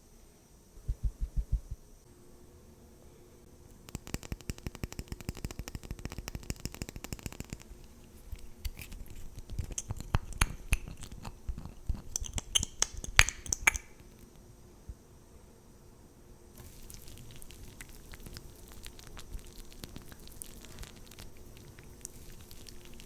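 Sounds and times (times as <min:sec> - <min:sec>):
makeup items clicking and tapping: 0:09.7 - 0:11.0, 0:12.0 - 0:13.9.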